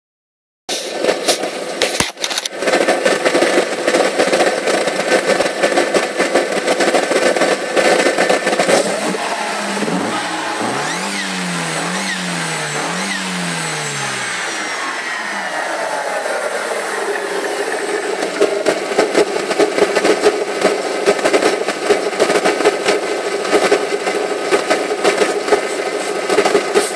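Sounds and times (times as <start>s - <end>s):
car engine revving: 7.5s - 20.9s
turbo whine: 8.6s - 20.0s.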